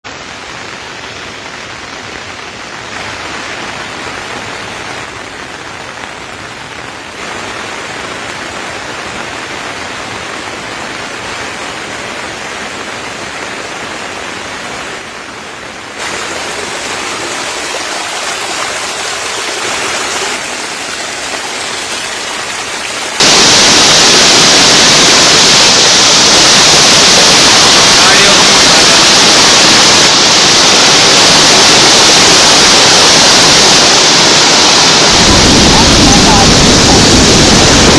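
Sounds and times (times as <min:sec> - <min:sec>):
flood water rushing: 0:00.1 - 0:37.9.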